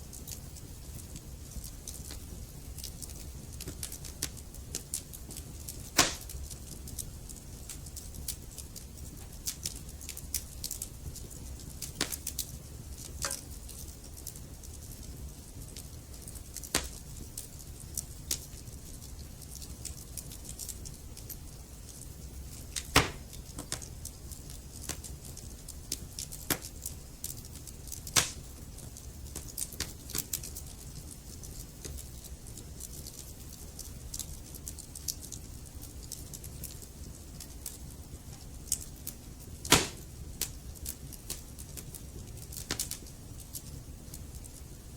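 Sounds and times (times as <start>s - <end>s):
fire crackling and popping: 0.0s - 44.9s
low rumble of flame: 0.0s - 44.9s.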